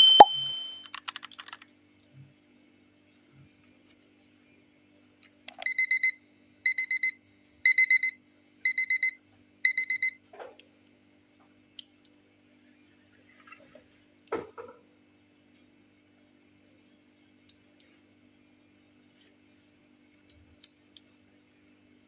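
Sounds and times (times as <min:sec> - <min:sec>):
electronic alarm beeping: 0:00.0 - 0:00.9, 0:05.6 - 0:10.2.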